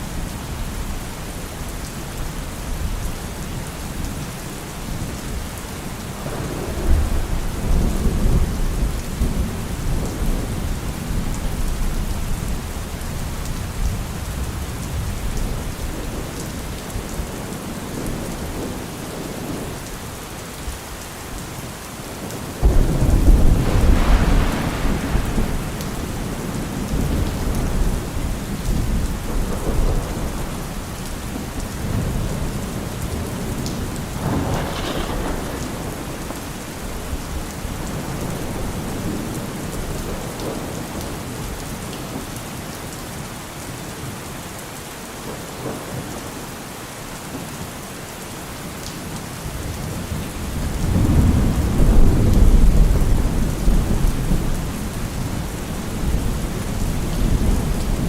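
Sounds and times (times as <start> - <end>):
steady rain falling: 0.0 - 58.0
thunder rumbling: 6.2 - 17.3, 22.2 - 41.6, 49.6 - 58.0.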